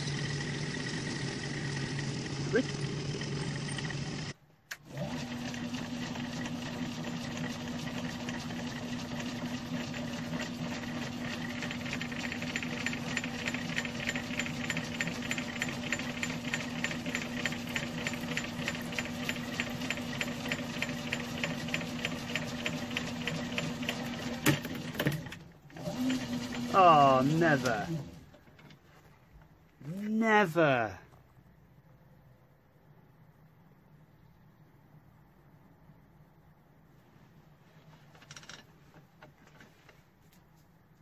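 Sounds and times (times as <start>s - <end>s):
metal lathe motor hum: 0.0s - 24.6s.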